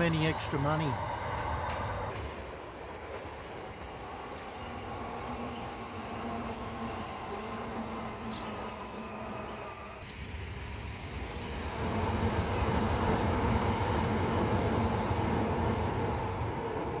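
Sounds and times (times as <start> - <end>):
train wheels rumbling on rail: 0.0 - 17.0
wheel squeal: 3.9 - 10.1, 11.9 - 17.0.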